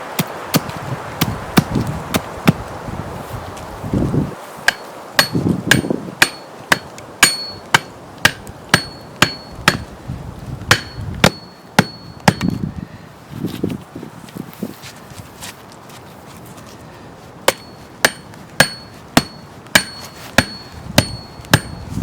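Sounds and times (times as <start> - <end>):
hammer blows on metal: 4.7 - 9.9, 10.7 - 12.7, 17.5 - 22.0.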